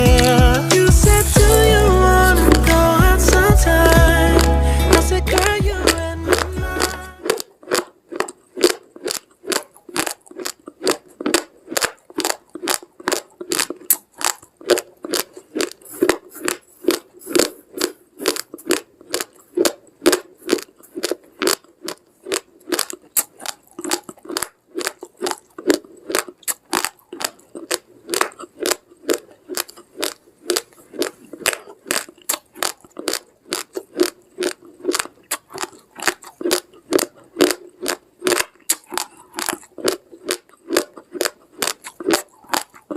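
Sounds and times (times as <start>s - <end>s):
person crunching raw rice: 0.0s - 42.9s.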